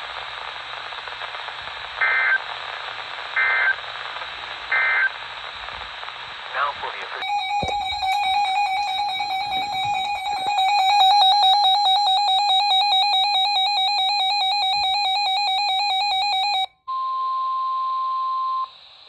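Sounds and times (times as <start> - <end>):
harsh two-tone alarm: 7.2 - 16.7
high steady tone: 7.2 - 16.7.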